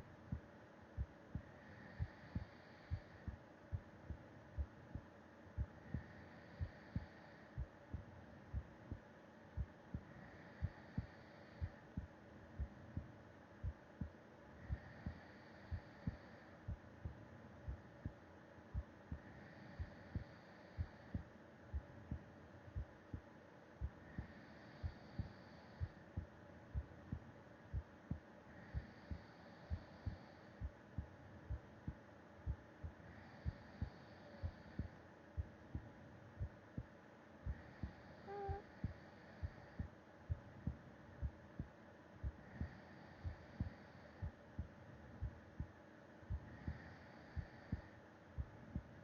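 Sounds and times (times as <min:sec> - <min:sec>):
heartbeat thuds: 0:00.0 - 0:49.0
soft slow breaths: 0:00.0 - 0:49.0.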